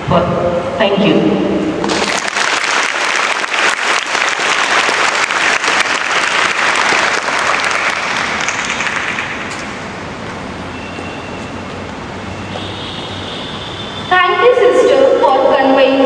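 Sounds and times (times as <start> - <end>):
audience applauding: 1.8 - 9.9.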